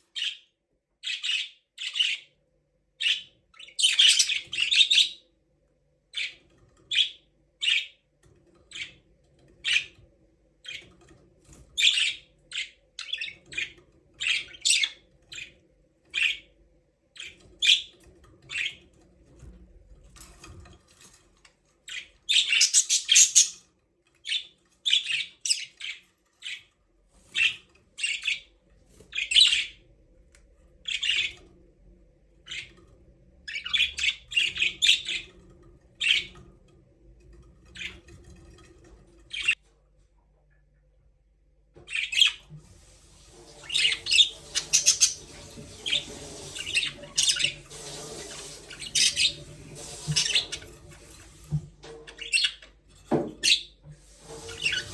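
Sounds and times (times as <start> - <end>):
budgerigars chirping and squawking: 0.0 - 2.4, 3.0 - 5.2, 6.1 - 8.0, 8.7 - 9.0, 9.6 - 10.0, 10.6 - 10.9, 11.5 - 16.5, 17.2 - 18.9, 21.9 - 29.8, 30.8 - 31.5, 32.4 - 32.8, 33.4 - 36.5, 37.7 - 38.4, 39.2 - 39.6, 41.8 - 42.5, 43.1 - 54.9.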